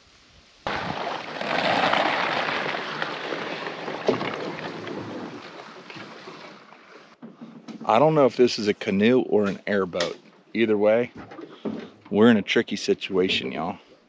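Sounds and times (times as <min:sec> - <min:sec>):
water rushing past a boat: 0:00.7 - 0:07.2.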